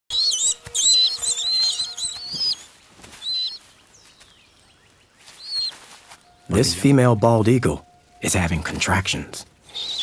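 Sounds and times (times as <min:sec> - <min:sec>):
eagle piping chirps: 0:00.1 - 0:06.8, 0:09.6 - 0:10.0.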